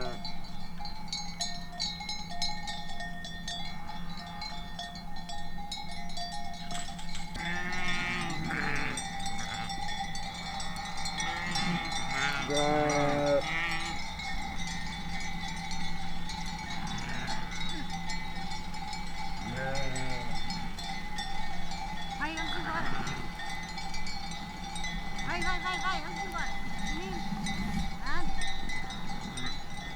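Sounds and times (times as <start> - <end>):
sheep bleating: 0.0 - 0.3, 7.3 - 14.1, 16.6 - 18.0, 19.4 - 20.7, 22.2 - 23.4, 25.2 - 29.9
sheep bells ringing: 0.0 - 29.9.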